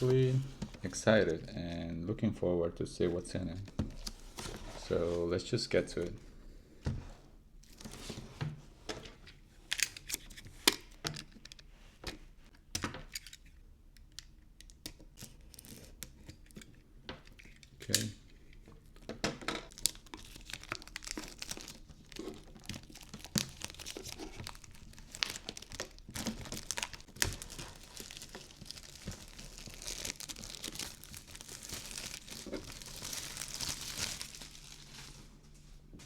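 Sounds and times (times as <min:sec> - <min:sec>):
plastic wrap crinkling and tearing: 0:00.0 - 0:01.5, 0:19.7 - 0:35.4.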